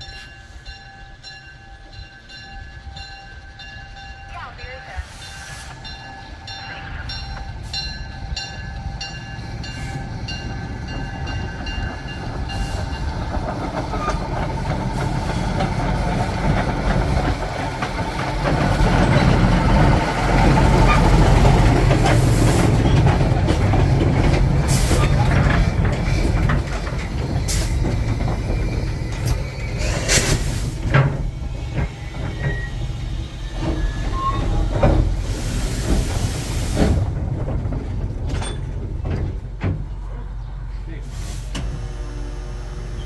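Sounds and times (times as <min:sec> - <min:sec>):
train rumbling: 0:00.0 - 0:43.0
train wheels clicking: 0:01.8 - 0:40.2.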